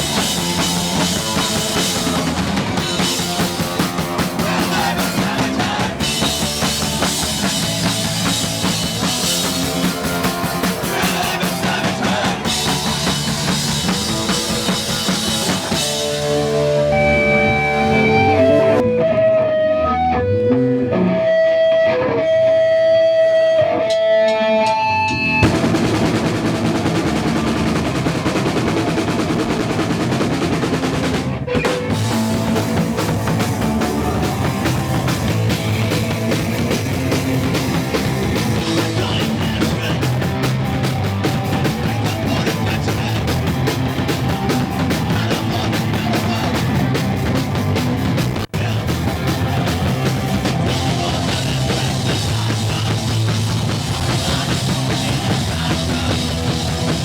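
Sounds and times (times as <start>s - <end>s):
punk band playing live: 0.0s - 57.0s
guitar sustained notes: 5.6s - 29.0s.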